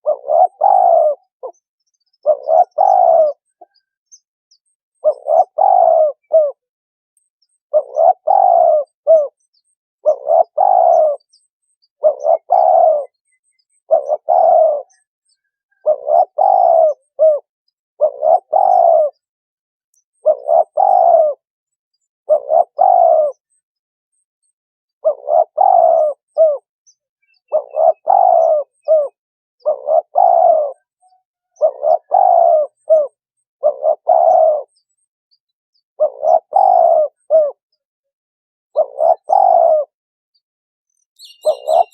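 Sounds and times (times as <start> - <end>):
dove cooing: 0.0 - 3.9, 5.0 - 6.7, 7.7 - 9.4, 10.0 - 11.4, 12.0 - 19.3, 20.2 - 21.4, 22.3 - 23.6, 25.0 - 26.7, 27.3 - 34.8, 36.0 - 37.7, 38.7 - 40.0, 41.2 - 41.9.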